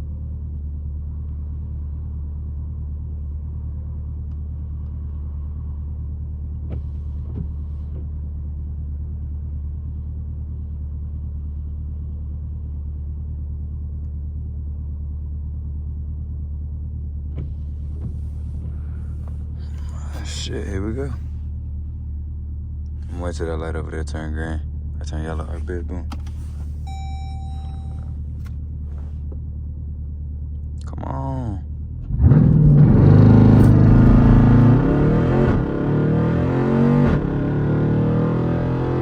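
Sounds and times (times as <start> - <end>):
car engine idling: 17.4 - 37.9.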